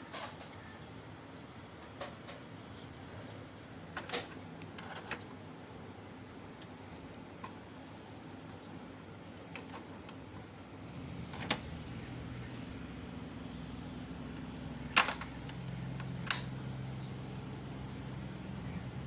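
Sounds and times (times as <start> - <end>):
low mechanical hum: 0.0 - 19.0
sharp clicks: 14.9 - 16.6.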